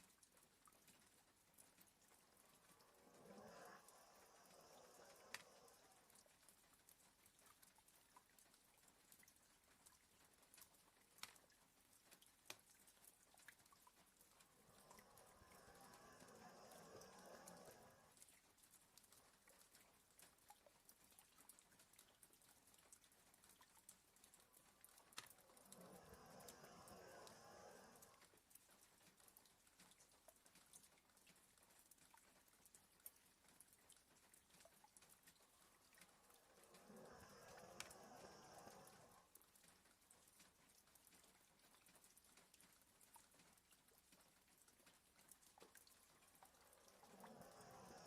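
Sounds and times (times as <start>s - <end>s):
rain on a window: 0.0s - 48.0s
dog snoring: 2.4s - 6.2s, 14.4s - 18.2s, 25.4s - 28.3s, 36.4s - 39.3s, 46.9s - 48.0s.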